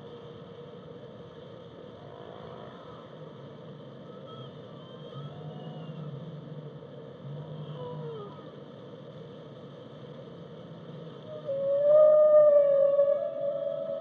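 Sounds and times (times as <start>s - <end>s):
steady background hiss: 0.0s - 14.0s
whale calls: 11.3s - 14.0s.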